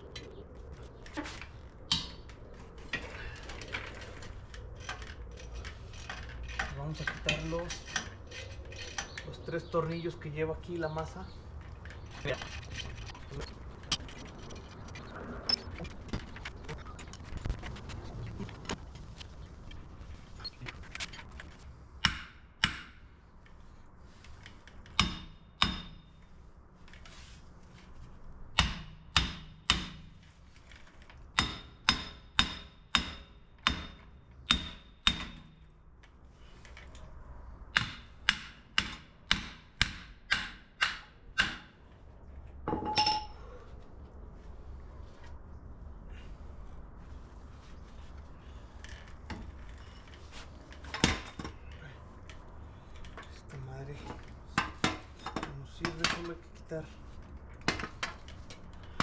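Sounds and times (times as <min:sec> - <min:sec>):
hammer striking metal: 0:22.0 - 0:23.0, 0:25.0 - 0:26.0, 0:31.4 - 0:35.4, 0:37.8 - 0:41.7.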